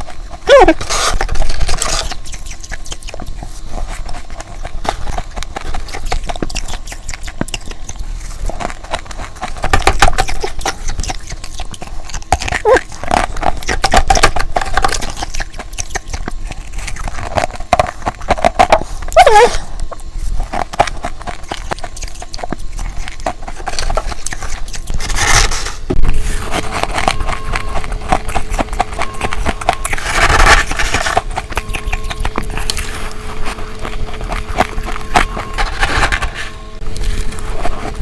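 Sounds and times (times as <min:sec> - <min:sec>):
ice being crunched: 0:00.6 - 0:02.5.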